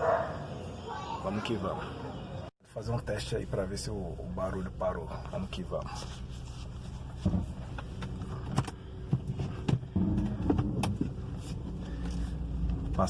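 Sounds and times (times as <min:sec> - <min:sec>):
car engine rumbling: 0:02.8 - 0:13.0.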